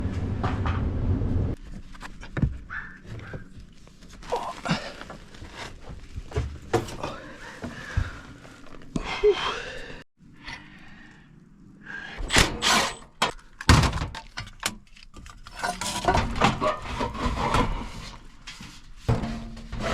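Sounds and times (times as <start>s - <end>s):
steady low rumble: 0.0s - 1.6s.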